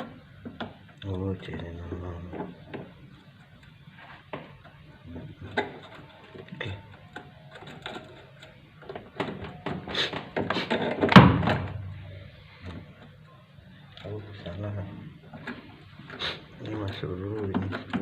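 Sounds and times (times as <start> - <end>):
clicks and knocks of parts handled: 5.4 - 11.7, 16.8 - 18.0
loud thunk: 10.9 - 12.0.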